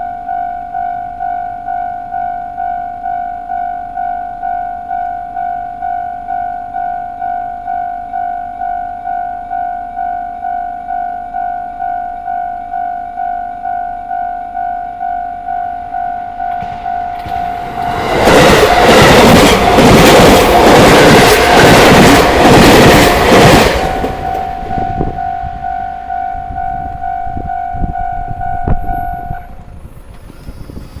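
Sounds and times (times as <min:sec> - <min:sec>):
level crossing warning bell ringing: 0:00.0 - 0:29.7
train passing: 0:15.8 - 0:31.0
wheels clattering over rail joints: 0:16.5 - 0:25.6.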